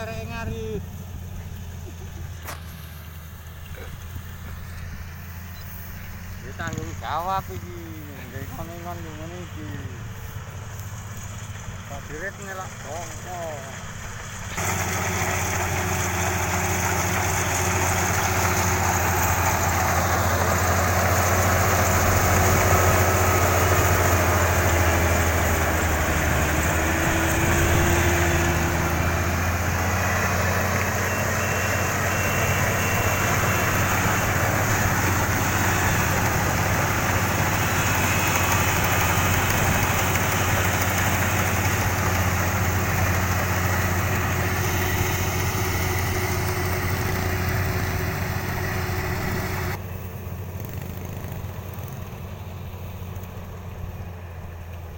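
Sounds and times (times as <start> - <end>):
combine harvester running: 0.0 - 54.9.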